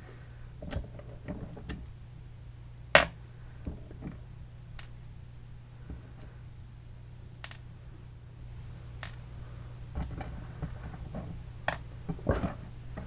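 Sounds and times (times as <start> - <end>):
small parts clicking and knocking: 4.8 - 5.0, 7.4 - 7.6, 9.0 - 9.2.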